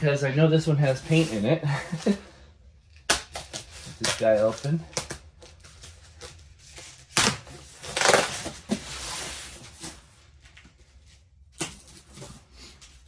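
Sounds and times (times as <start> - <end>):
cardboard tearing: 2.9 - 10.0.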